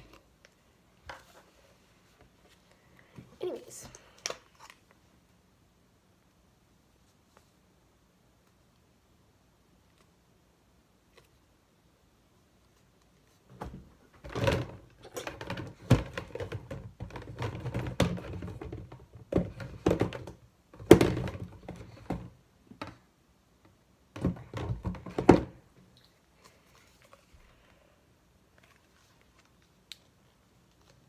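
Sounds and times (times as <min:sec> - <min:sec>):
objects knocking and thudding: 0:13.5 - 0:23.1, 0:24.1 - 0:25.7.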